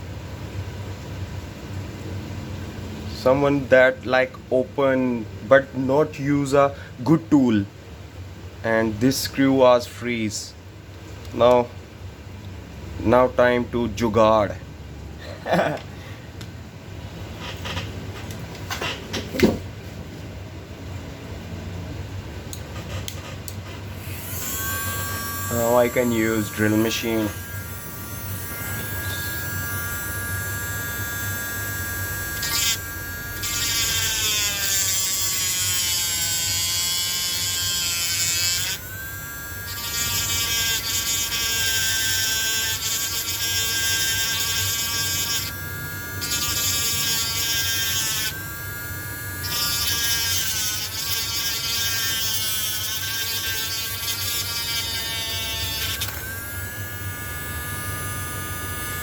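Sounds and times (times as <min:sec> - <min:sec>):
electric drill whining: 0:23.9 - 0:59.0
high grinding hiss: 0:24.0 - 0:59.0.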